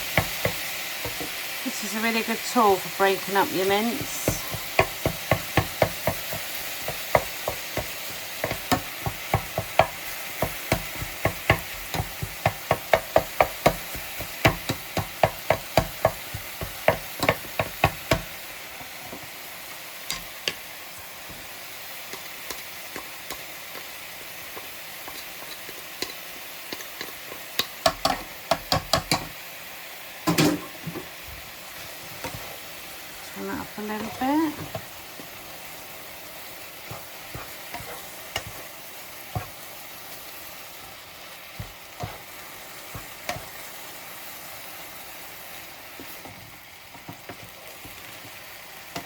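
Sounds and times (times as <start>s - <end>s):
meat sizzling in a pan: 0.0s - 49.0s
tool knocking against pan: 4.3s - 18.3s, 27.6s - 29.3s.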